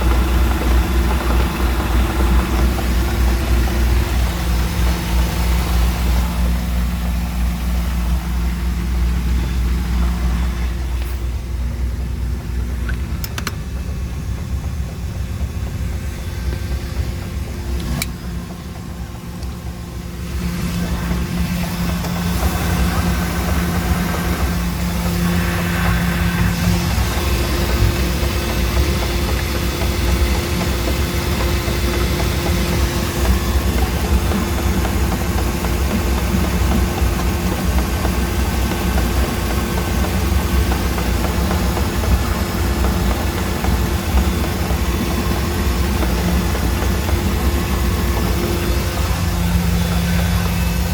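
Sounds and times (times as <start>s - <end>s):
boat engine knocking: 0.0s - 50.9s
sharp clicks: 12.8s - 13.9s.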